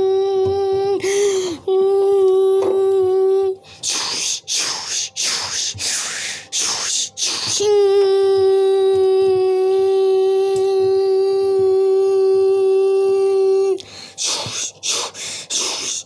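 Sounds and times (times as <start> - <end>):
steady pitched hum: 0.0 - 16.0
short hissing bursts: 3.9 - 7.5.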